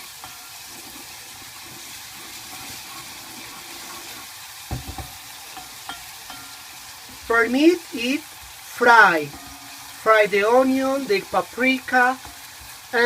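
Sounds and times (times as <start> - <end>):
vegetables sizzling in oil: 0.0 - 13.0
stirring knocks against pan: 4.6 - 6.5.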